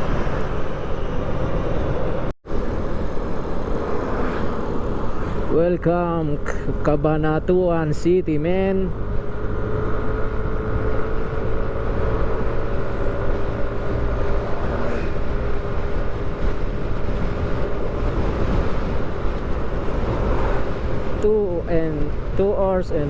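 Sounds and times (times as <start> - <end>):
wind rush on microphone: 0.0 - 7.7, 8.6 - 23.0.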